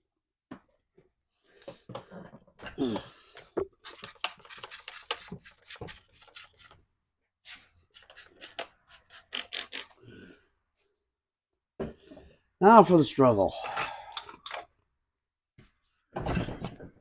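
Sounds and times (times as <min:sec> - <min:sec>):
spray bottle squirting: 0:03.7 - 0:06.8, 0:07.9 - 0:10.0.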